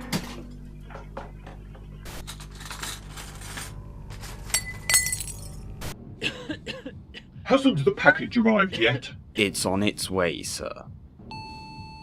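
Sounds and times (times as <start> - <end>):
glassy clinks: 4.6 - 5.6.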